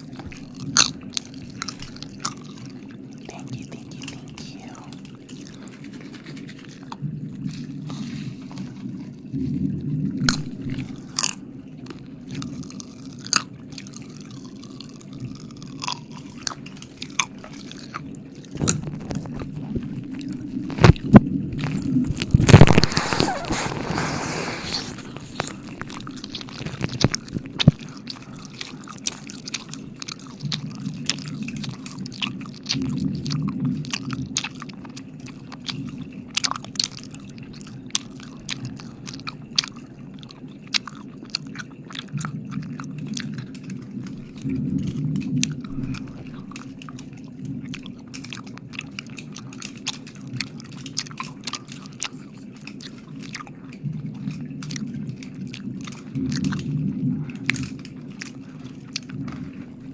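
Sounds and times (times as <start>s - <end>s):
wet mouth licking and smacking: 0.0s - 9.6s, 10.2s - 59.9s
low steady hum: 0.0s - 59.9s
breath blown onto microphone: 22.1s - 27.4s.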